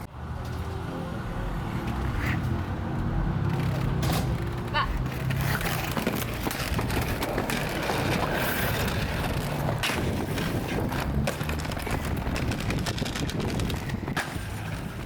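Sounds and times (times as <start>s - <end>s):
skateboard wheels rolling on pavement: 0.0s - 15.0s
skateboard knocks and clacks: 3.4s - 15.0s.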